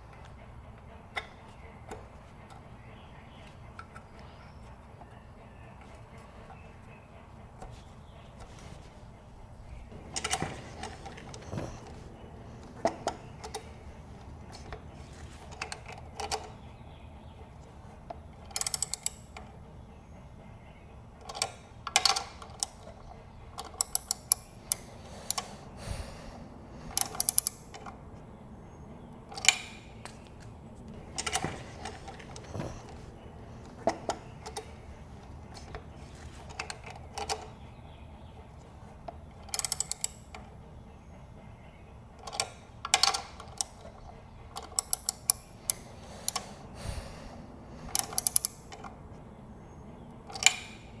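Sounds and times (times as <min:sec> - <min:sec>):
tools and metal parts clinking: 0:09.7 - 0:16.6, 0:18.4 - 0:19.5, 0:21.3 - 0:26.2, 0:26.8 - 0:28.0, 0:29.3 - 0:37.6, 0:39.4 - 0:40.4, 0:42.2 - 0:47.2, 0:47.8 - 0:48.9.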